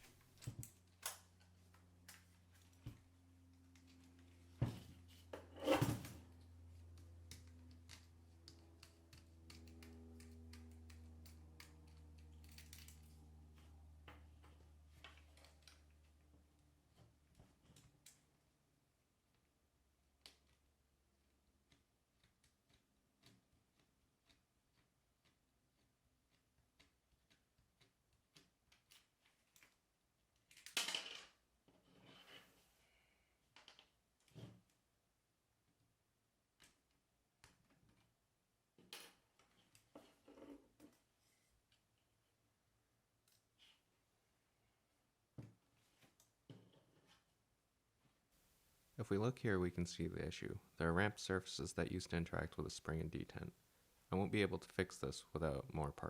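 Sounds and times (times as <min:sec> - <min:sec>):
small tools clicking: 0:07.0 - 0:13.2.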